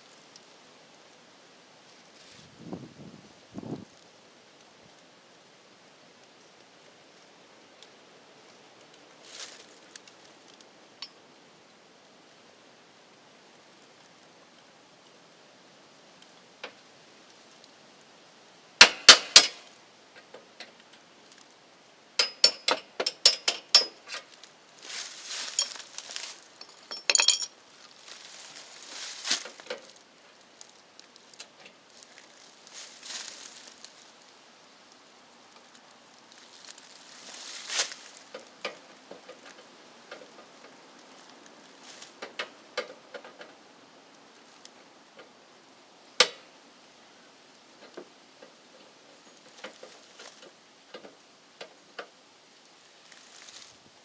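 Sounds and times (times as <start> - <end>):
rustling and scraping: 9.2 - 10.5, 22.3 - 34.3, 36.3 - 43.6, 47.8 - 51.2, 53.0 - 54.0
hardware clinking: 22.2 - 24.2, 25.3 - 27.6
metallic clicks of tools: 22.2 - 24.2.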